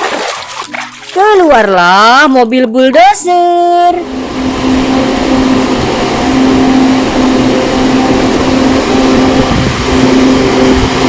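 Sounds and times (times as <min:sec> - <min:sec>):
low hum: 0:03.6 - 0:11.0
mechanical whirring: 0:04.0 - 0:11.0.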